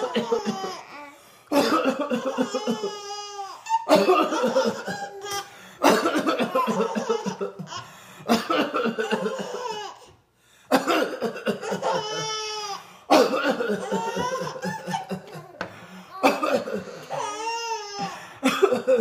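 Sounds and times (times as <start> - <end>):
man coughing: 0.0 - 0.8, 1.5 - 3.0, 3.9 - 9.7, 10.7 - 12.4, 13.1 - 17.3, 17.9 - 19.0
babies laughing: 0.0 - 10.2, 10.9 - 19.0.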